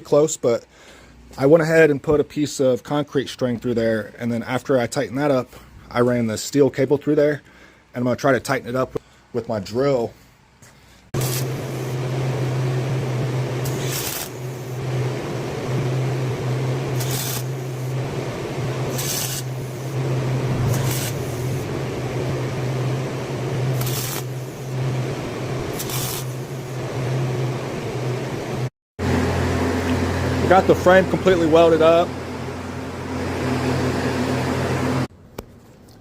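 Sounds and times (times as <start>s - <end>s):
cable hissing scrapes: 11.2s - 11.9s, 13.6s - 14.8s, 16.9s - 18.0s, 18.9s - 21.8s, 23.7s - 24.7s, 25.7s - 26.4s
power drill running: 11.2s - 26.8s.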